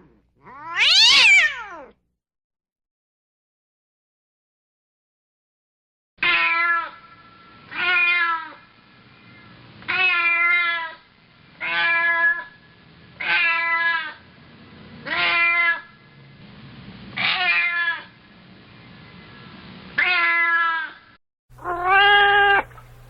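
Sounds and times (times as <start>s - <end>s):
cat meowing: 0.4s - 2.0s, 6.2s - 7.0s, 7.7s - 8.6s, 11.6s - 12.4s, 15.1s - 15.8s, 21.6s - 23.0s.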